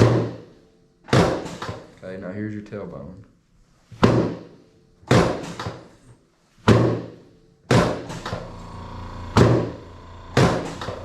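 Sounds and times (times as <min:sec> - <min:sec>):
table section thudding down: 0:06.6 - 0:08.4, 0:09.4 - 0:09.8, 0:10.4 - 0:11.0.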